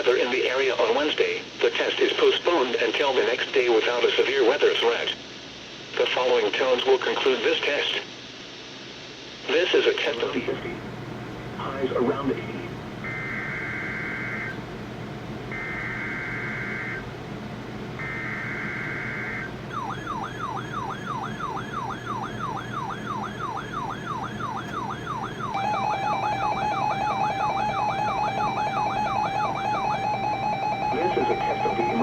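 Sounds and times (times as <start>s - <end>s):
rapid pulsed beeping: 13.0s - 14.6s, 15.5s - 17.1s, 18.0s - 32.0s
siren-like warble: 13.0s - 14.6s, 15.5s - 17.1s, 18.0s - 32.0s.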